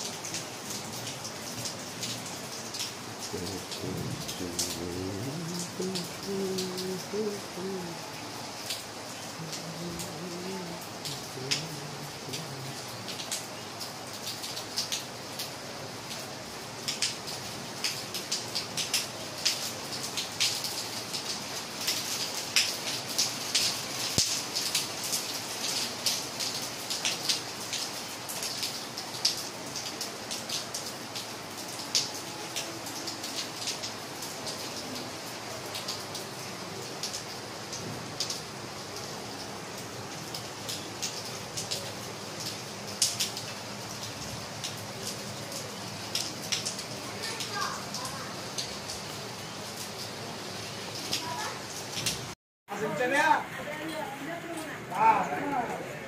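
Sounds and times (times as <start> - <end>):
raindrops tapping: 0.0 - 8.0, 8.7 - 15.5, 37.0 - 50.1
steady rain hiss: 0.0 - 56.0.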